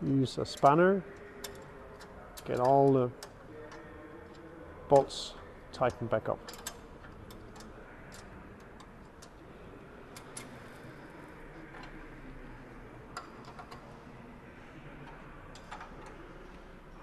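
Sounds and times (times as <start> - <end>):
spanner metal clicks: 5.8 - 9.4.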